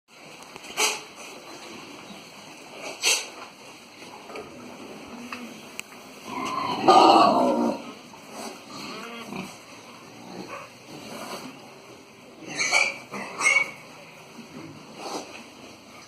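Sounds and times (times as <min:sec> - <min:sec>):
pigs calling: 0:06.2 - 0:15.5.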